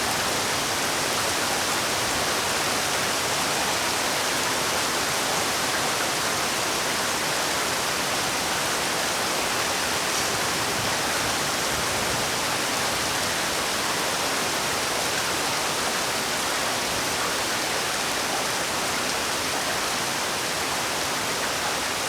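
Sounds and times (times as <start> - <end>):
heavy rain: 0.0 - 22.0.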